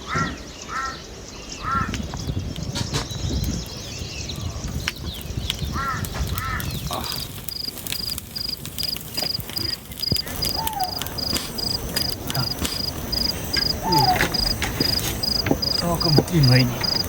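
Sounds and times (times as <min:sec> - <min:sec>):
cricket chirping: 0:07.0 - 0:17.0
short bird calls: 0:09.6 - 0:17.0.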